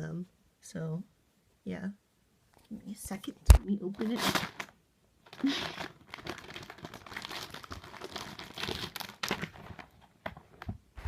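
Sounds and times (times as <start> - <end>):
plastic packaging crinkling: 3.9 - 10.7.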